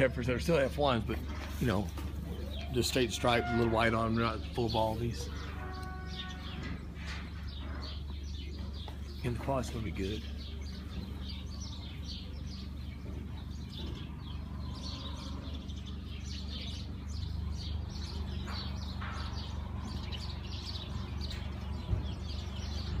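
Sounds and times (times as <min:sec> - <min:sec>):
small birds chirping: 0:00.0 - 0:23.0.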